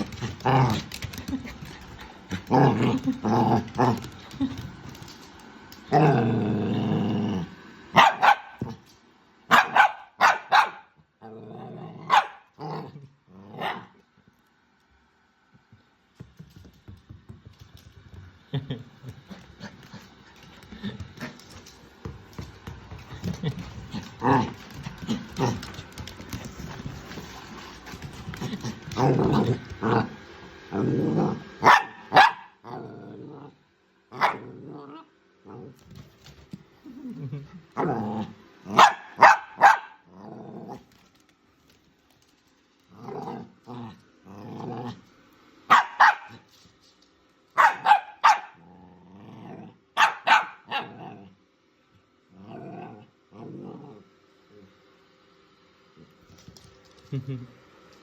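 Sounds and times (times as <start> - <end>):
dog growling: 0.0 - 4.6, 5.9 - 7.6, 11.2 - 13.8, 28.3 - 31.6, 32.6 - 35.8, 36.8 - 38.4, 40.0 - 41.0, 42.9 - 45.0, 48.5 - 49.9, 52.3 - 54.1
dog barking and growling: 5.8 - 8.8, 9.5 - 14.0, 23.2 - 26.5, 27.9 - 35.8, 36.9 - 40.9, 42.9 - 45.0, 45.7 - 46.4, 47.6 - 51.4
dog barking: 8.0 - 8.6, 9.5 - 11.0, 12.1 - 12.5, 31.6 - 32.6, 38.7 - 40.0, 45.7 - 46.4, 47.6 - 48.6, 50.0 - 50.9.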